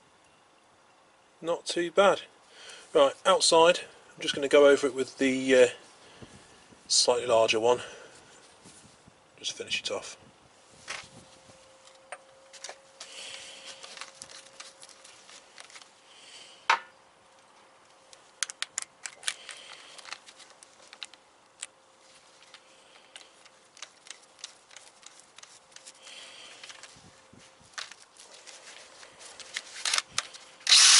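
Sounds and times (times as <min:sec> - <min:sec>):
faint steady hum: 0:00.0 - 0:30.9
tools and parts clicking: 0:18.4 - 0:21.7, 0:29.4 - 0:30.9.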